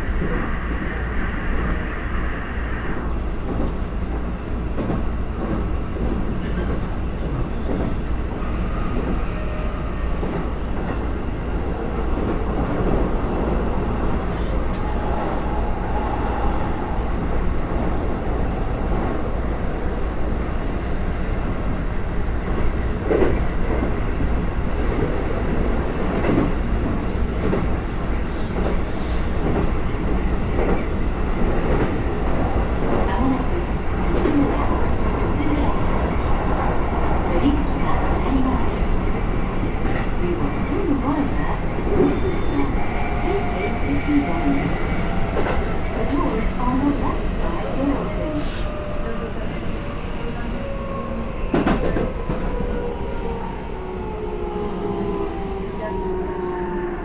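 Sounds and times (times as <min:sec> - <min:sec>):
electric train rumbling: 0:00.0 - 0:57.0.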